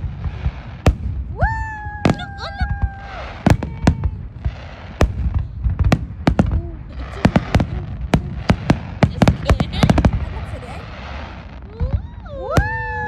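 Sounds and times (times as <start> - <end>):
fireworks bangs and cracks: 0.0 - 13.0.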